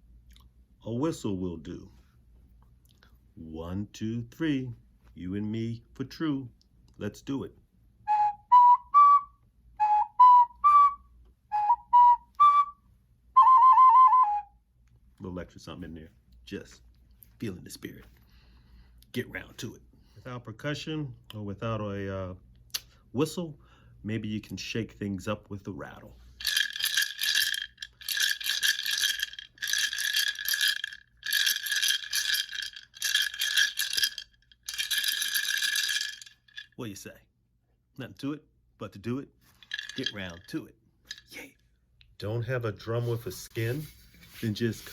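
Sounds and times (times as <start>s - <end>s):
ceramic whistle short notes: 8.1s - 14.6s
clay rattle shaken: 26.3s - 36.9s, 39.4s - 41.6s.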